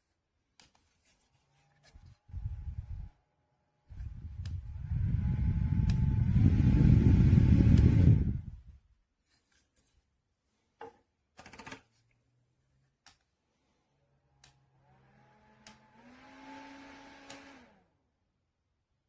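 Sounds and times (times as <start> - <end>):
small fan blowing air: 1.9 - 8.8, 14.4 - 18.0.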